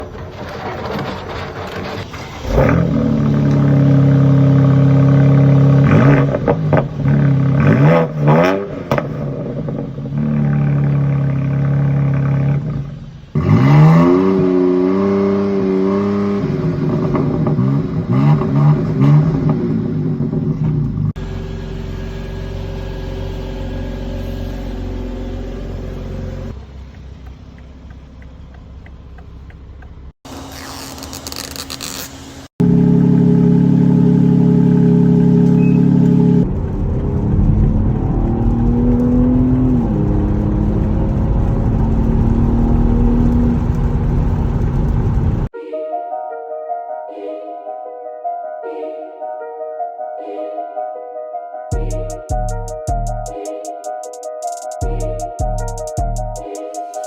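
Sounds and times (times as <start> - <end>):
car engine starting and revving: 0.0 - 30.4, 31.2 - 45.5.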